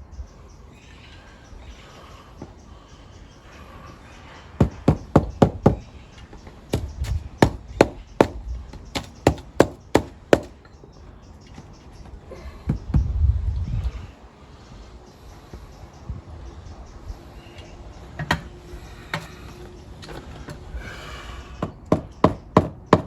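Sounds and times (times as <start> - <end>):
sharp knocks: 4.6 - 5.8, 6.7 - 10.6, 21.6 - 23.0.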